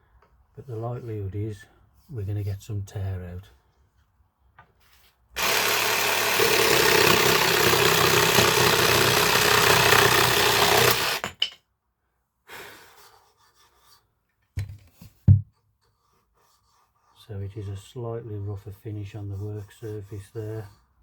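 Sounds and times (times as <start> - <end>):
jigsaw cutting through wood: 5.4 - 11.4.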